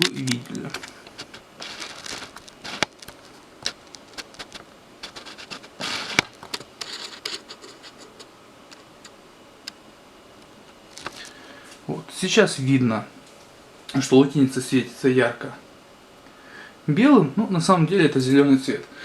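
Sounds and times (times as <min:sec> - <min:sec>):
handling scrapes: 0:00.0 - 0:09.2, 0:10.8 - 0:11.8.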